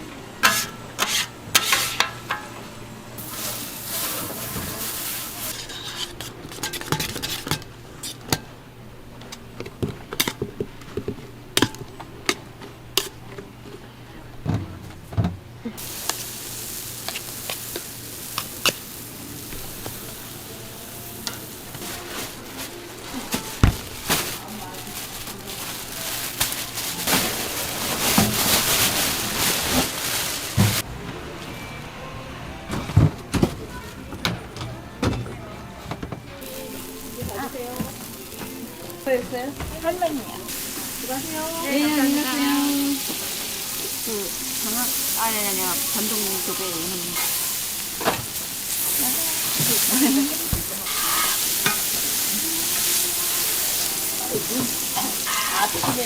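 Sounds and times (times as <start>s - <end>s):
utensils clinking on dishes: 0.4s - 2.6s, 3.2s - 8.6s, 17.0s - 30.8s, 35.9s - 56.0s
food sizzling on a griddle: 3.2s - 8.2s, 15.8s - 30.8s, 36.4s - 56.0s.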